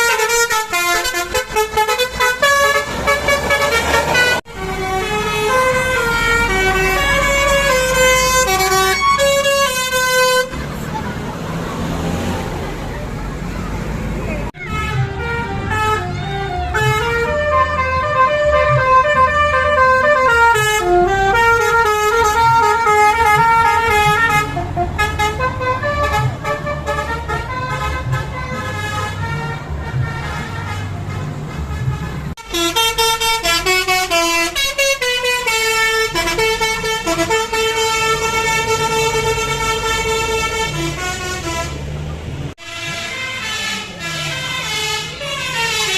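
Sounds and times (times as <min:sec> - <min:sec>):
multi-tone bus horn melody: 0:00.0 - 0:11.3, 0:14.4 - 0:45.9
low engine rumble: 0:00.0 - 0:45.9.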